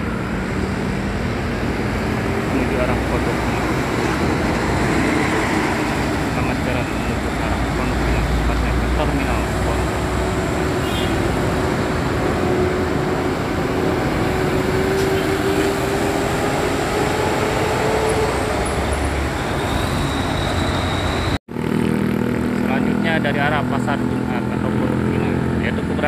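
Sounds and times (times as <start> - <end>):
faint engine whine: 0.0 - 16.6
city road traffic: 0.0 - 26.0.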